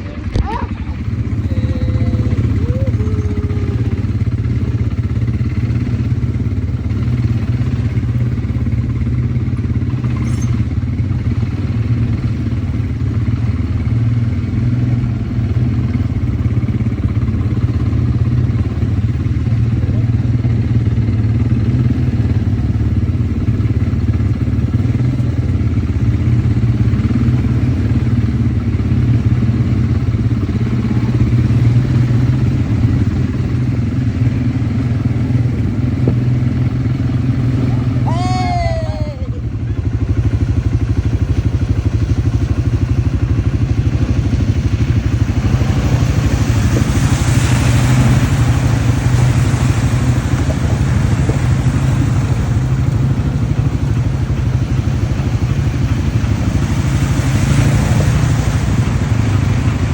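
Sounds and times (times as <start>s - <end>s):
quad bike engine running: 0.0s - 59.9s.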